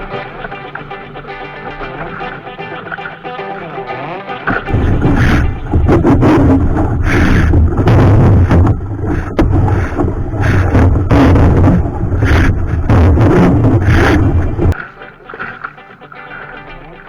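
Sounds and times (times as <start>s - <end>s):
rushing water: 0.0s - 17.0s
wind buffeting microphone: 4.7s - 14.8s.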